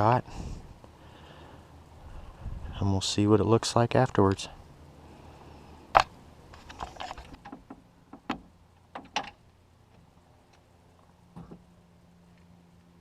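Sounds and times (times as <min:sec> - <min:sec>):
sharp clicks and knocks: 0:05.9 - 0:10.6.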